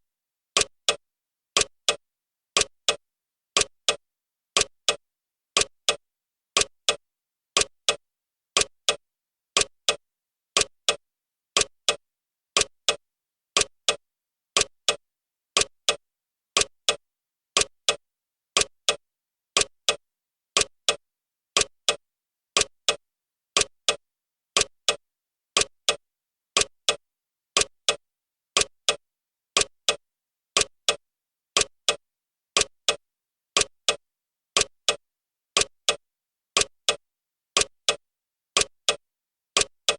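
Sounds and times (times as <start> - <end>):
clock ticking: 0.6 - 1.0, 1.6 - 2.0, 2.6 - 3.0, 3.6 - 4.0, 4.6 - 5.0, 5.6 - 6.0, 6.6 - 7.0, 7.6 - 8.0, 8.6 - 9.0, 9.6 - 10.0, 10.6 - 11.0, 11.6 - 12.0, 12.6 - 13.0, 13.6 - 14.0, 14.6 - 15.0, 15.6 - 16.0, 16.6 - 17.0, 17.6 - 18.0, 18.6 - 19.0, 19.6 - 20.0, 20.6 - 21.0, 21.6 - 22.0, 22.6 - 23.0, 23.6 - 24.0, 24.6 - 25.0, 25.6 - 26.0, 26.6 - 27.0, 27.6 - 28.0, 28.6 - 29.0, 29.6 - 30.0, 30.6 - 31.0, 31.6 - 32.0, 32.6 - 33.0, 33.6 - 34.0, 34.6 - 35.0, 35.6 - 36.0, 36.6 - 37.0, 37.6 - 38.0, 38.6 - 39.0, 39.6 - 39.9.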